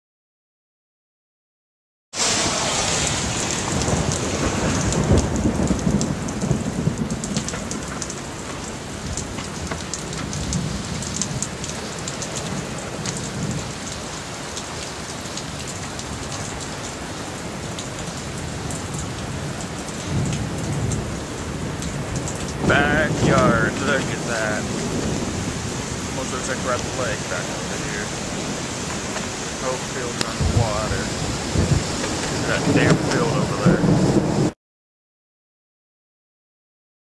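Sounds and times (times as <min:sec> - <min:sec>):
heavy rain pouring: 0:02.2 - 0:34.6
low rumbles: 0:18.5 - 0:34.5.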